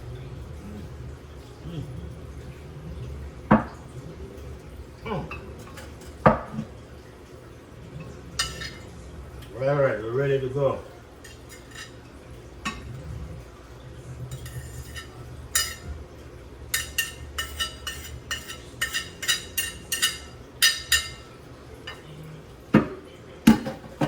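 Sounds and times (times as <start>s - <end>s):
low steady hum: 0.0s - 24.0s
utensils and dishes clinking: 3.5s - 7.0s, 7.8s - 9.6s, 10.8s - 24.0s.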